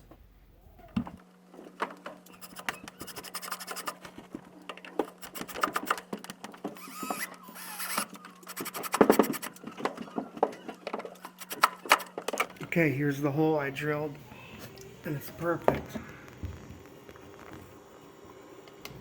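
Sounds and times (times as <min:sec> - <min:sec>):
steady low hum: 0:00.0 - 0:19.0
scratching and clicking handling noise: 0:00.8 - 0:12.8.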